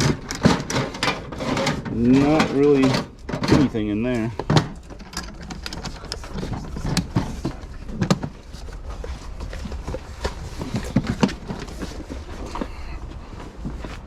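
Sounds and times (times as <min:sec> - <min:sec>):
belongings clicking and knocking: 0:00.0 - 0:13.2
steady low rumble: 0:05.9 - 0:14.0.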